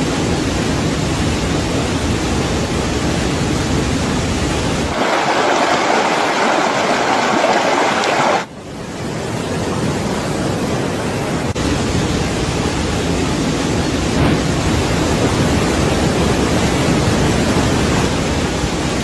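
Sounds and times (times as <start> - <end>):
floodwater roaring over waterfall: 0.0 - 19.0.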